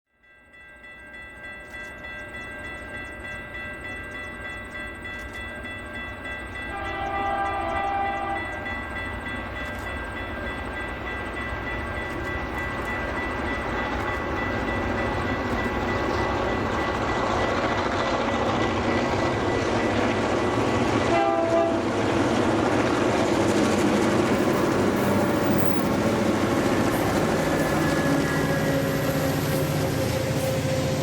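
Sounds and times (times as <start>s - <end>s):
diesel locomotives working hard: 1.6s - 31.0s
train horn blast: 6.7s - 8.7s, 21.0s - 22.0s.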